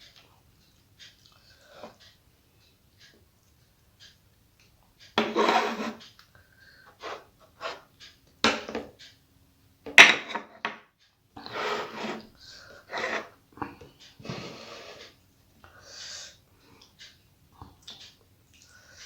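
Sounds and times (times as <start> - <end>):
chewing and mouth noise: 17.6 - 18.8.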